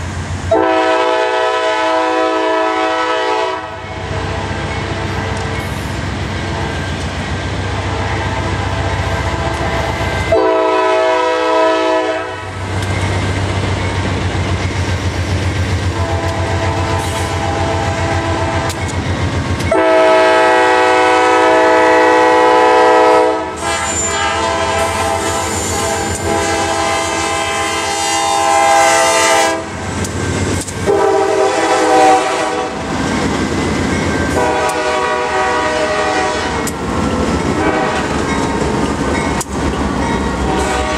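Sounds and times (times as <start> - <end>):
train rumbling past: 0.0 - 40.9
locomotive horn blasts: 0.5 - 5.4, 7.8 - 12.6, 15.9 - 18.8, 19.7 - 29.8, 30.8 - 32.9, 34.3 - 36.8, 37.6 - 38.2, 40.4 - 40.9.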